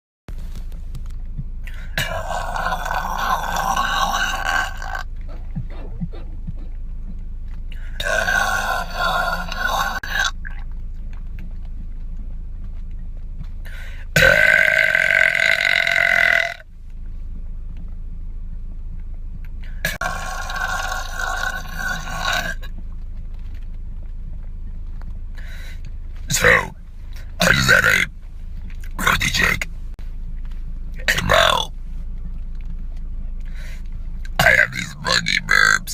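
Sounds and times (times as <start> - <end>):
man belching: 1.7 - 5.1, 7.9 - 10.6, 14.2 - 16.6, 19.8 - 22.7, 34.4 - 35.9.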